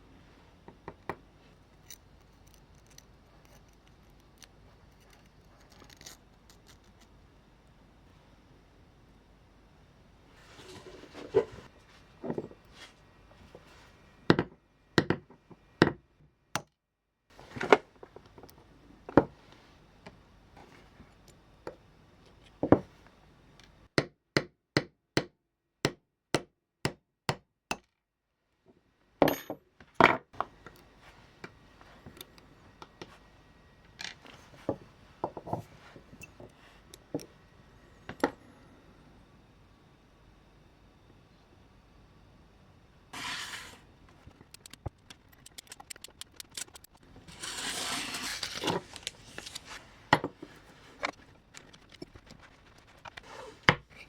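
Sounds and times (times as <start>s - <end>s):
small tools clicking and tapping: 1.8s - 7.2s, 44.1s - 47.0s
evenly spaced clicks: 44.4s - 47.0s.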